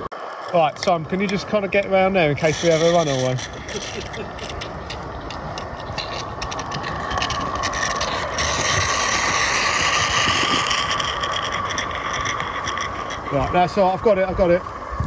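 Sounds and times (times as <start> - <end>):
steam locomotive hissing: 0.6 - 4.6.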